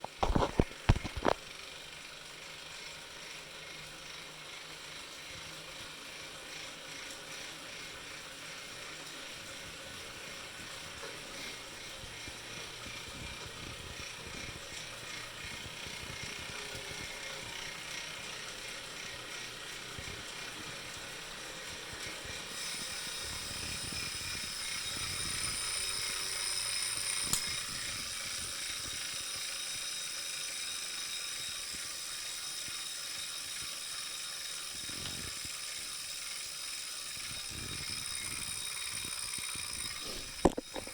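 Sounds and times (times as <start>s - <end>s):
bike trainer whirring: 0.0s - 40.9s
ticking from trainer: 11.0s - 40.9s.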